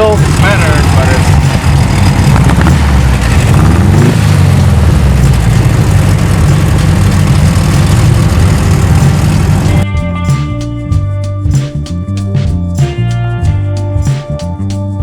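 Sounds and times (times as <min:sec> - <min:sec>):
car engine running: 0:00.0 - 0:09.8.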